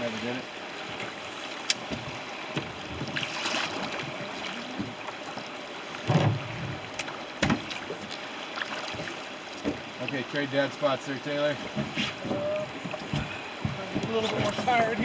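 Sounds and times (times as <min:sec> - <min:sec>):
river water rushing: 0:00.0 - 0:15.0
knocks against boat: 0:01.7 - 0:03.2, 0:04.7 - 0:05.0, 0:06.0 - 0:07.9, 0:08.9 - 0:10.0, 0:11.6 - 0:15.0.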